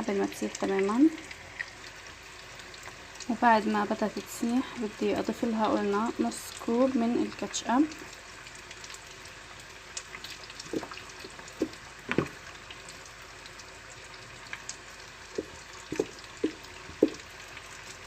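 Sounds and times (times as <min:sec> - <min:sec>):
butter sizzling in a pan: 0:00.0 - 0:18.0
wet plops and bubbles: 0:10.4 - 0:12.5, 0:15.3 - 0:17.3.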